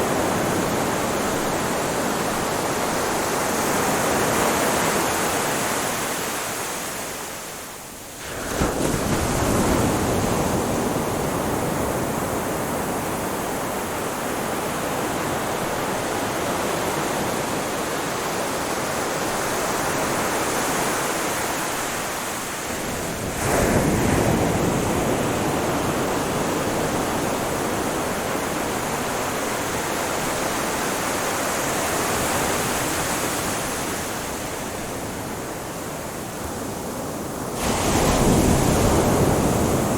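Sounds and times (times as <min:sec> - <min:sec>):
rushing wash of surf: 0:00.0 - 0:39.9
waves crashing: 0:00.0 - 0:39.9.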